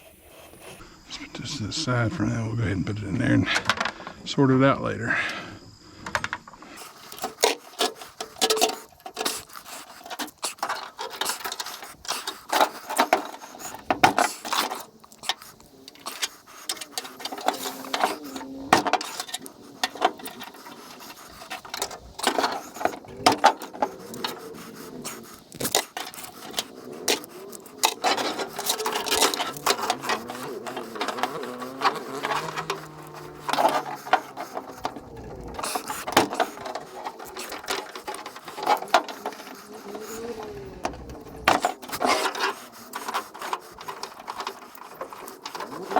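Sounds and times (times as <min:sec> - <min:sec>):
scrap metal clanking: 0:06.2 - 0:45.9.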